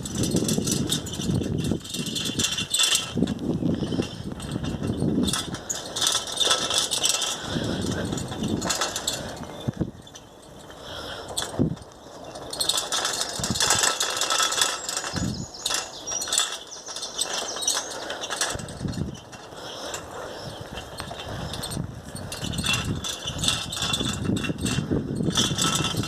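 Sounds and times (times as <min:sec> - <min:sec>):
wheel rattling and squeaking: 0:00.0 - 0:26.0.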